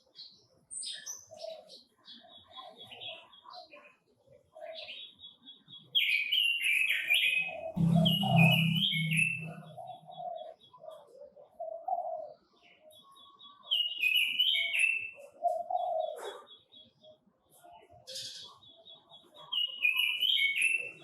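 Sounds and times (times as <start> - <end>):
birds singing: 0.0 - 21.0
low hum: 7.8 - 10.1.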